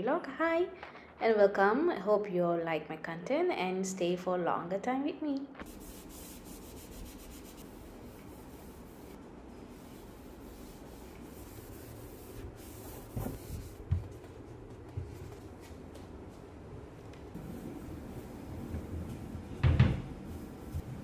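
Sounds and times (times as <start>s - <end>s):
hands rubbing and wiping: 5.6s - 16.5s.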